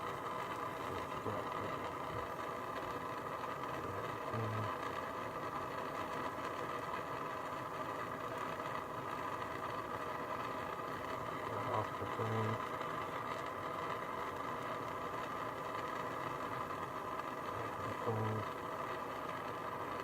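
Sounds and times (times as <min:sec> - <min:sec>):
torch flame burning: 0:00.0 - 0:20.0.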